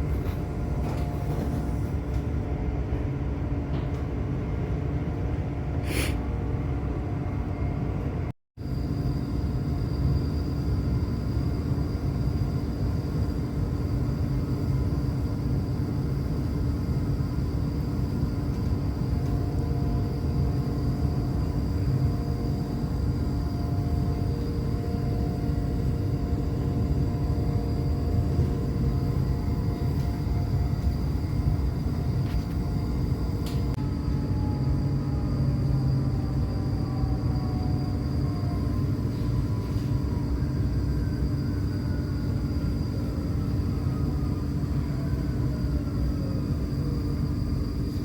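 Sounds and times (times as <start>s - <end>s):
train wheels rumbling on track: 0.0s - 8.3s, 9.2s - 48.0s
faint steady whines: 0.0s - 48.0s.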